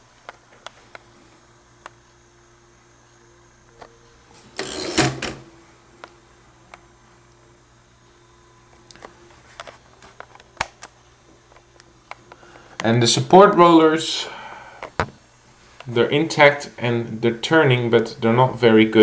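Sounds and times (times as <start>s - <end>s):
typewriter metallic rattle and slide: 4.6s - 5.4s.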